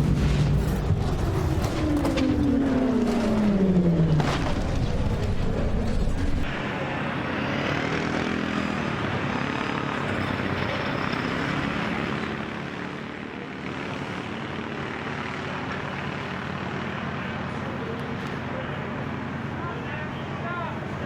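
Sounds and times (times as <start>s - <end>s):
loud low rumble: 0.0s - 6.7s.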